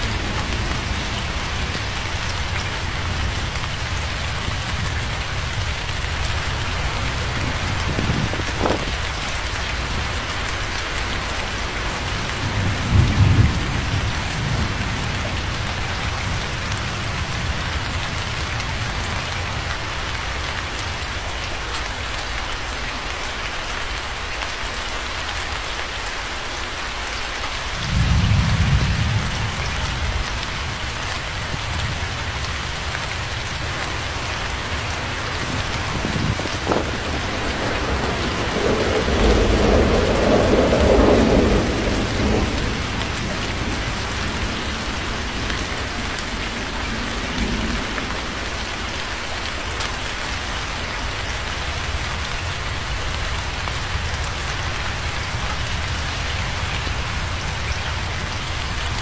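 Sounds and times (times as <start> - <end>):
thunder crack: 0.0 - 16.4, 31.5 - 48.9
thunder rumbling: 0.0 - 21.4, 27.7 - 59.0
heavy rain: 0.0 - 59.0.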